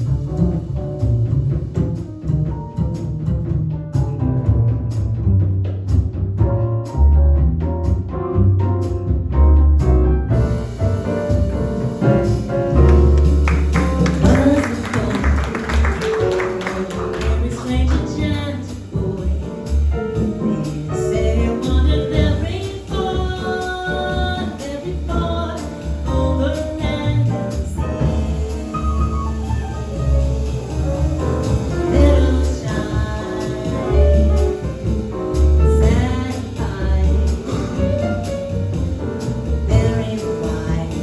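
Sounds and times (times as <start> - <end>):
drums: 0.0 - 41.0
piano: 0.0 - 41.0
upright bass: 0.0 - 41.0.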